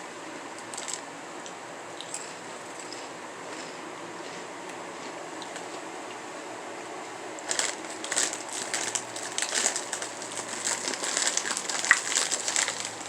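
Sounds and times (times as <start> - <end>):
snack bag crinkling: 0.6 - 1.0, 7.4 - 13.0.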